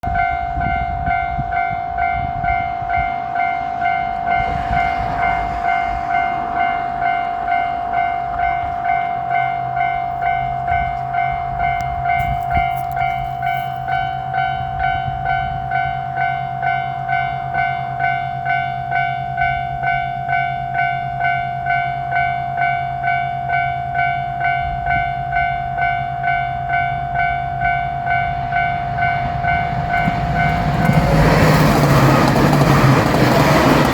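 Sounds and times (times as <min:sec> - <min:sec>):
railroad crossing bell ringing: 0:00.0 - 0:33.9.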